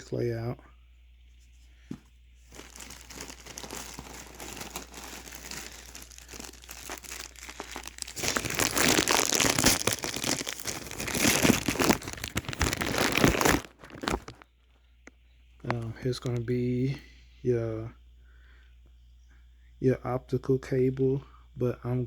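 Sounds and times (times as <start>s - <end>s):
plastic packaging crinkling: 2.5s - 14.5s.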